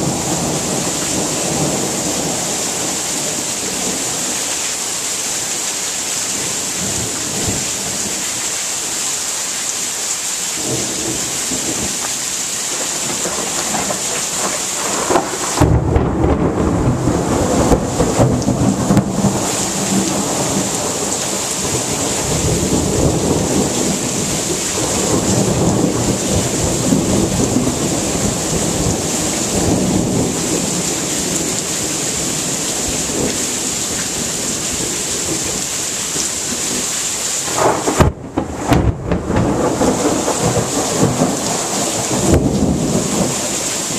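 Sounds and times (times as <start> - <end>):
heavy rain: 0.0 - 43.9
low rumble of thunder: 12.8 - 33.4, 37.5 - 43.6.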